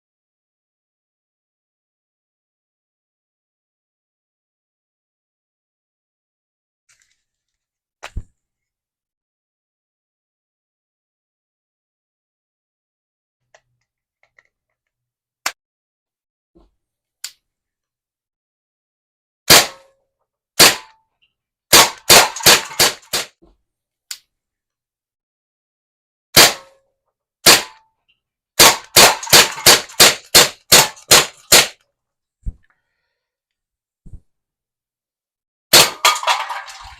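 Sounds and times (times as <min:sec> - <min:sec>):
bb pistol firing sharp pops: 0:19.5 - 0:19.9, 0:20.6 - 0:21.0, 0:21.7 - 0:23.3, 0:26.4 - 0:26.7, 0:27.4 - 0:27.8, 0:28.6 - 0:31.8.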